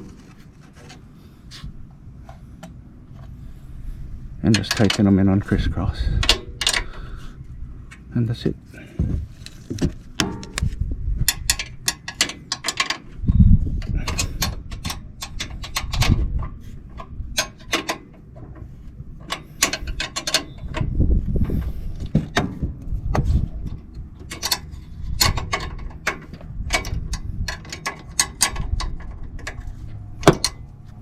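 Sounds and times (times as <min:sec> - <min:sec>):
handling knocks and rumbles: 0:08.8 - 0:14.8, 0:20.7 - 0:24.4
wrench clicking: 0:19.3 - 0:20.9.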